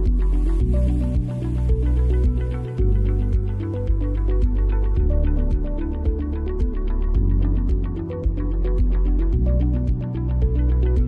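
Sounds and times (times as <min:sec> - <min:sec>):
background music with quick beat: 0:00.0 - 0:11.0.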